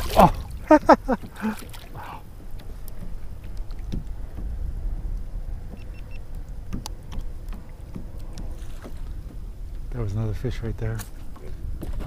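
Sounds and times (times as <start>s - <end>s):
small water splashes: 0.0s - 4.0s, 7.5s - 9.5s
wind rumble on microphone: 0.0s - 12.0s.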